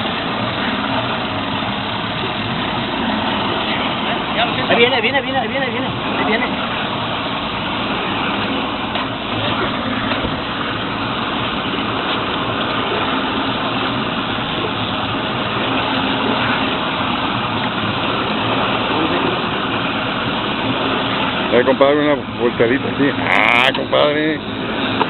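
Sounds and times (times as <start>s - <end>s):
boat motor droning: 0.0s - 25.0s
water noise: 0.0s - 25.0s.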